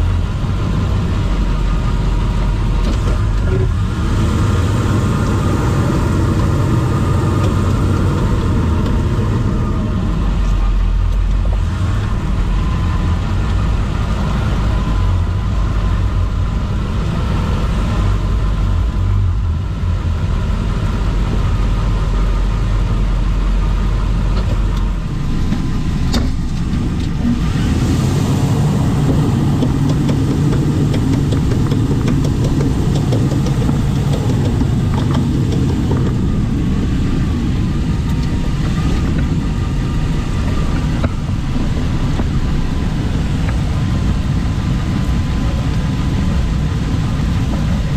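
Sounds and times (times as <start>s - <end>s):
car engine and road rumble: 0.0s - 47.9s
rotational drivetrain clicking: 24.3s - 47.9s.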